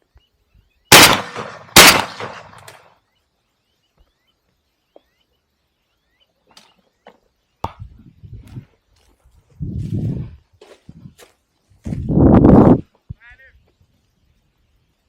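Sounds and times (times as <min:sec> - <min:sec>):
shotgun shots echoing: 0:00.9 - 0:02.8.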